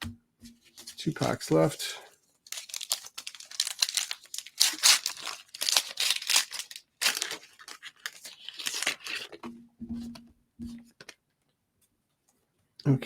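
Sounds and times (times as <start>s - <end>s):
wrapper tearing and crinkling: 2.4s - 9.4s.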